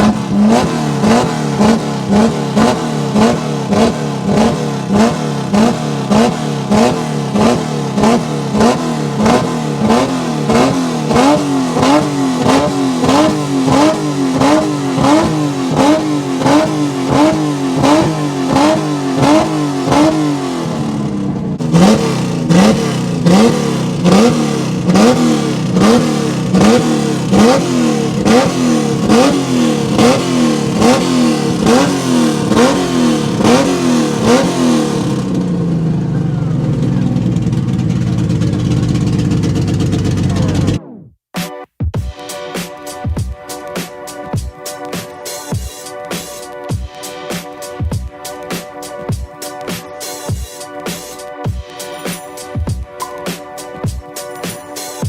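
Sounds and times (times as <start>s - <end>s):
car engine revving: 0.0s - 41.0s.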